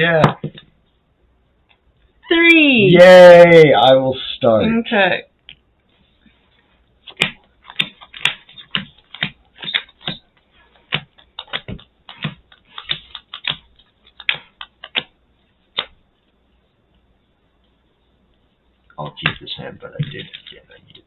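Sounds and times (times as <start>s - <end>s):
playing cards tapping on a table: 7.1s - 10.2s, 10.9s - 15.1s.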